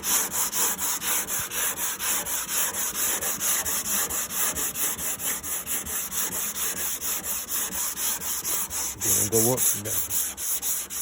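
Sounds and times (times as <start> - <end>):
sandpaper rubbing on metal: 0.0 - 11.0.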